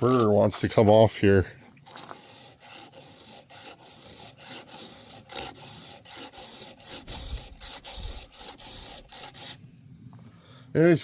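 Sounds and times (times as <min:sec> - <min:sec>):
file rasping on chain: 0:00.0 - 0:00.6, 0:01.9 - 0:09.6.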